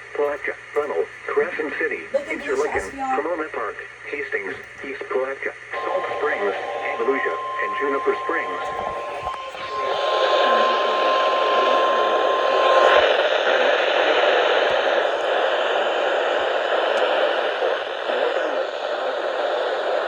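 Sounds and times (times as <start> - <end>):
radio static hiss: 0.0 - 20.0
steady high tone: 5.7 - 15.2.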